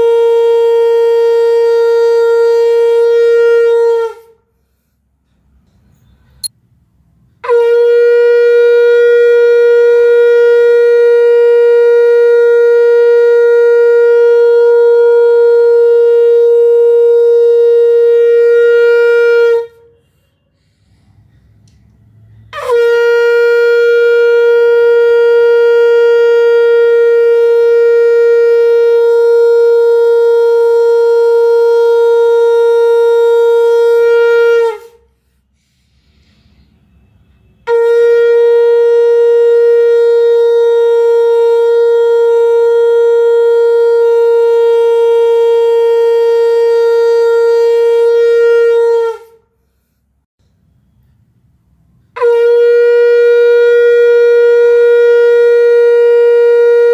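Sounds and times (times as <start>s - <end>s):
conch shell blasts: 7.4s - 20.4s, 22.4s - 35.1s, 36.7s - 49.4s, 52.0s - 56.9s.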